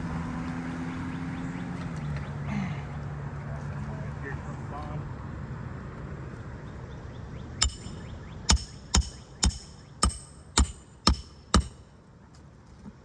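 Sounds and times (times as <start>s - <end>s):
hammer driving nails into shingles: 7.6s - 11.9s.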